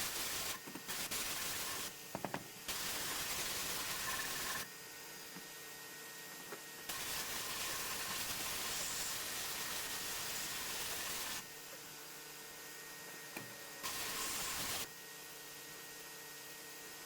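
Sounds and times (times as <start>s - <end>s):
sandblasting gun hissing: 0.0s - 2.0s, 2.7s - 4.6s, 6.9s - 11.5s, 13.8s - 14.9s.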